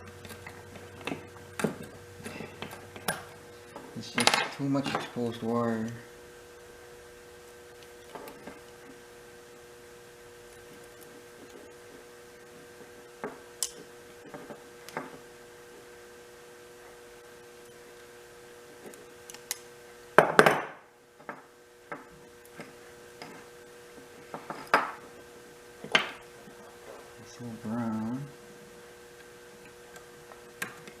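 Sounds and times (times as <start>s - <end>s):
faint electrical hum: 0.0s - 31.0s
hand tools clicking on wire: 13.6s - 13.9s.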